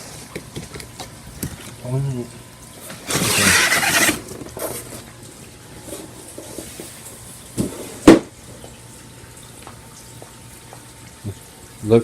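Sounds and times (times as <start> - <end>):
cardboard packaging rustling: 3.0 - 4.9.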